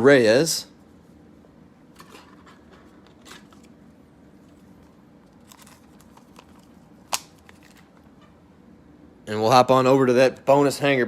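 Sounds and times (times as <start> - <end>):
cards rustling and clicking: 4.4 - 8.1.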